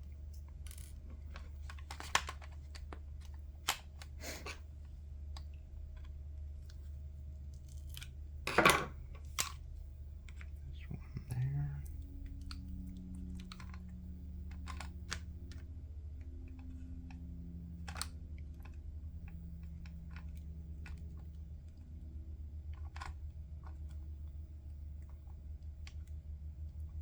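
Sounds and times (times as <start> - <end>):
steady low hum: 0.0 - 27.0
plastic parts clicking and tapping: 0.2 - 6.9, 7.5 - 9.6, 11.8 - 15.7, 17.8 - 21.4, 22.7 - 26.1.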